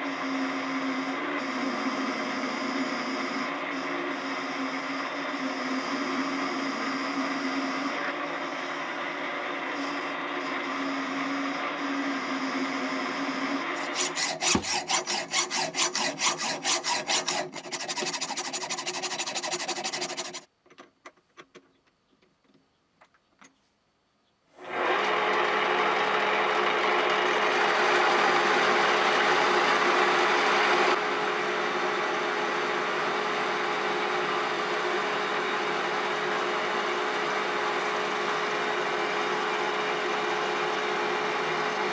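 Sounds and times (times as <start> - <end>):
machine tool cutting metal: 0.2 - 20.5
fast rhythmic scraping: 13.8 - 20.5.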